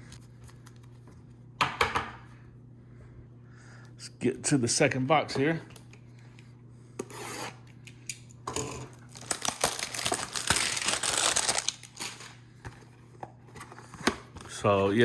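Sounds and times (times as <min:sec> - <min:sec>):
packaging rustling and tearing: 0:08.9 - 0:12.4.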